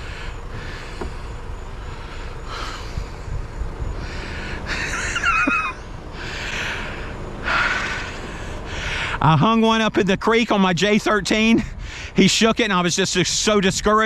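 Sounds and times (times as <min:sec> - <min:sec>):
wind rumble on microphone: 0:00.0 - 0:04.8
man breathing hard: 0:00.0 - 0:05.0, 0:06.1 - 0:09.2, 0:11.6 - 0:12.2.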